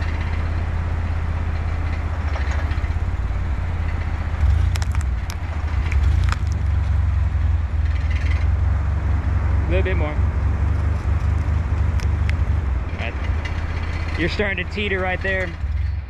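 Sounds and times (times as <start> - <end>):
car engine running low: 0.0 - 16.0
sharp clicks and cracks: 4.4 - 6.8, 11.0 - 12.4.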